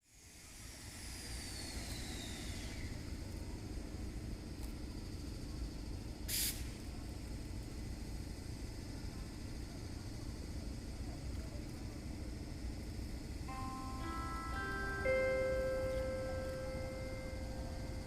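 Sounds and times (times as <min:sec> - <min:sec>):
short sharp hiss: 0:06.3 - 0:06.8
faint falling whines: 0:13.5 - 0:18.0.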